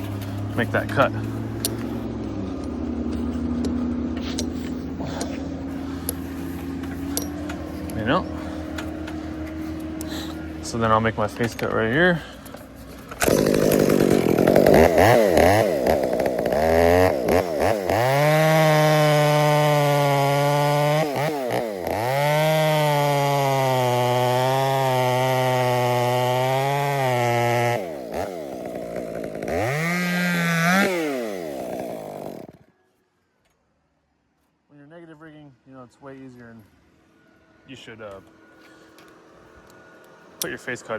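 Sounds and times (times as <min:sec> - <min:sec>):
chainsaw cutting at full throttle: 0:13.2 - 0:32.7.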